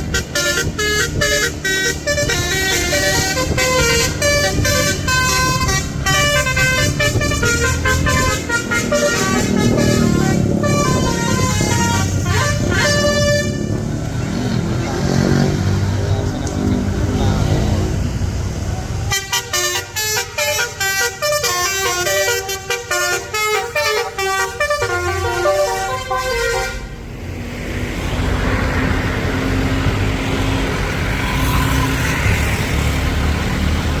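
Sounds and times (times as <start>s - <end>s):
bus horn playing tune: 0.0s - 13.9s, 19.0s - 27.0s.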